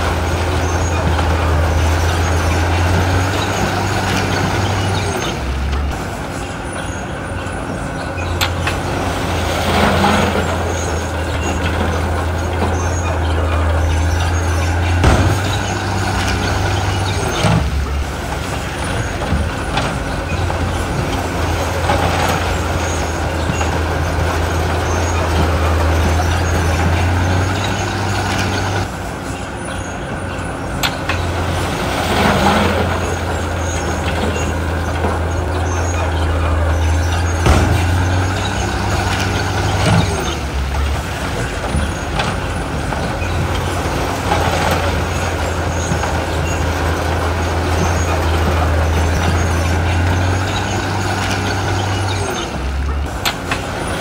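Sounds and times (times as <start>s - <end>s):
diesel machinery engine drone: 0.0s - 54.0s
sharp knocks: 13.8s - 17.8s, 37.0s - 40.4s.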